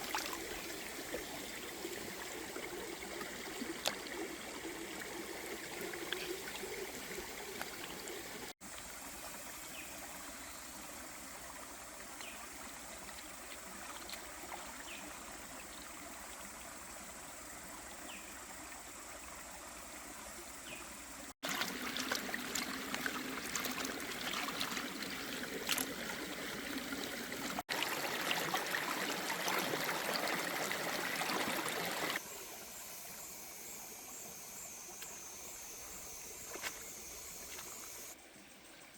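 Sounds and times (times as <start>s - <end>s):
water trickling: 0.0s - 17.7s, 21.4s - 33.3s.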